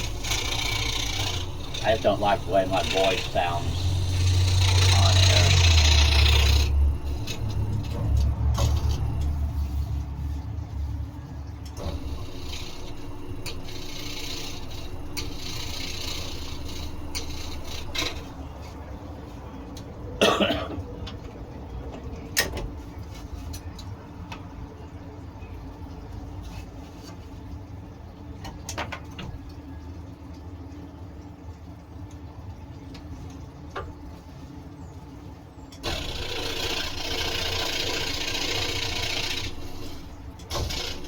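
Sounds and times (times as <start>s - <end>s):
scroll saw humming: 0.0s - 10.0s, 11.8s - 18.9s, 35.8s - 41.0s.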